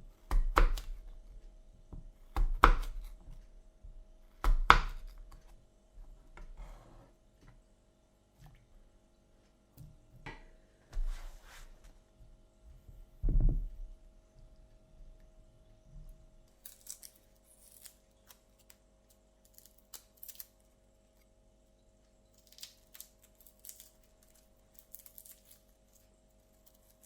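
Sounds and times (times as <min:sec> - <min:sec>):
soft scraping: 0:10.9 - 0:12.0.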